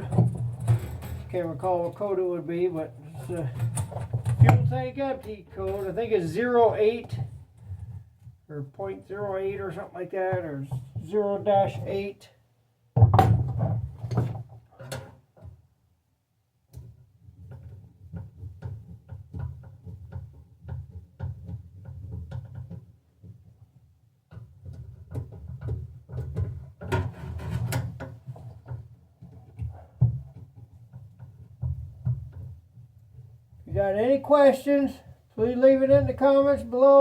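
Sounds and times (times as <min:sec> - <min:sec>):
clicks and knocks of handling: 0:00.0 - 0:02.0, 0:03.1 - 0:06.0, 0:13.1 - 0:15.6, 0:24.3 - 0:33.7.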